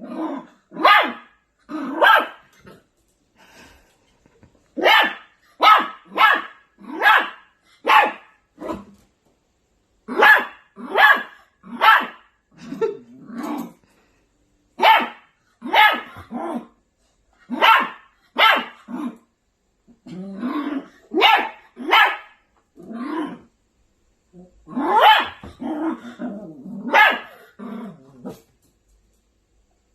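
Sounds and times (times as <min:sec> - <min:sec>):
growling barks: 0:00.0 - 0:02.8, 0:04.8 - 0:08.9, 0:10.1 - 0:13.8, 0:14.8 - 0:16.8, 0:17.5 - 0:19.2, 0:20.0 - 0:23.5, 0:24.6 - 0:28.5
puppy yapping barks: 0:00.8 - 0:02.4, 0:04.8 - 0:08.4, 0:10.1 - 0:12.3, 0:14.8 - 0:16.1, 0:17.5 - 0:18.8, 0:21.1 - 0:22.4, 0:24.9 - 0:25.5, 0:26.9 - 0:27.4.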